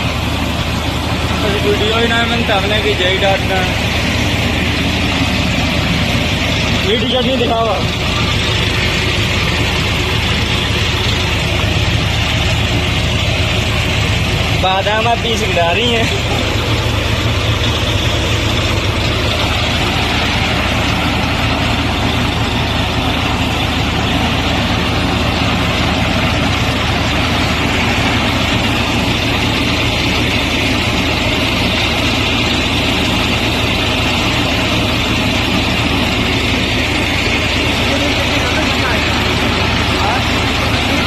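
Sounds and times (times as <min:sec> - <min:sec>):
machine hum: 0:00.0 - 0:41.0.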